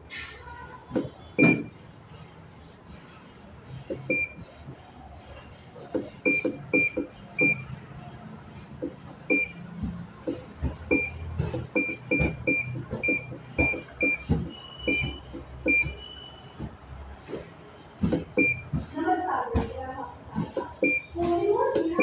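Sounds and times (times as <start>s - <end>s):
keypad beeps: 1.4s - 1.8s, 3.9s - 4.5s, 6.0s - 7.8s, 9.2s - 9.7s, 10.8s - 16.6s, 17.8s - 18.8s, 20.8s - 22.0s.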